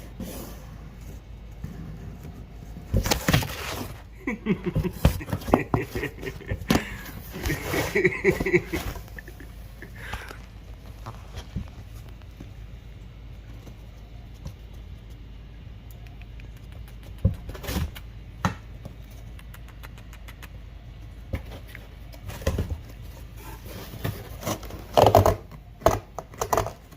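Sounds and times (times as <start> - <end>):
steady low hum: 0.0 - 26.9
kitten scratching cardboard box: 21.4 - 25.5.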